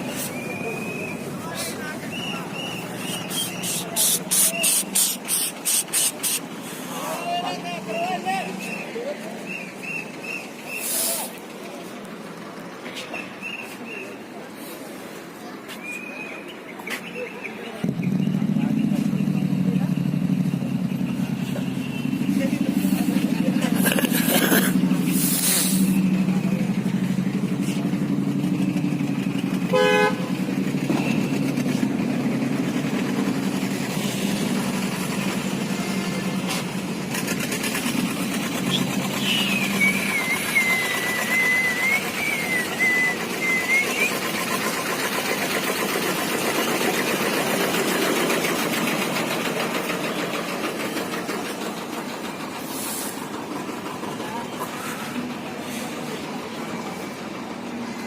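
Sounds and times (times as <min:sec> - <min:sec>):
road traffic: 0:00.0 - 0:58.0
motorcycle engines running: 0:17.1 - 0:58.0
short horn toot: 0:29.7 - 0:30.3.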